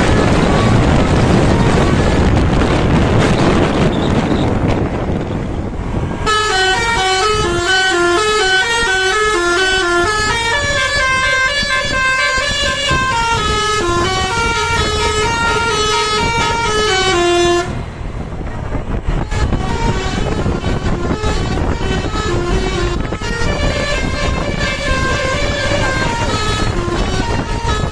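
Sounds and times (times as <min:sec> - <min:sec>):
engine and road noise: 0:00.0 - 0:27.9
musical bus air horn tune: 0:06.2 - 0:17.8, 0:19.1 - 0:27.9.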